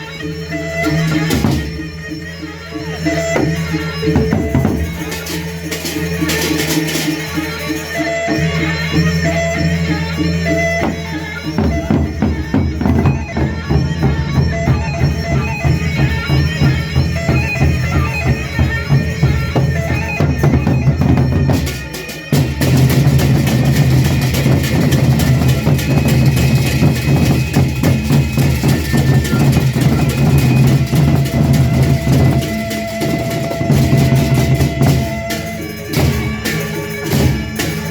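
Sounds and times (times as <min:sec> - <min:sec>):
reedy wind instrument: 0:00.0 - 0:37.9
fast dense drumming: 0:11.6 - 0:37.9.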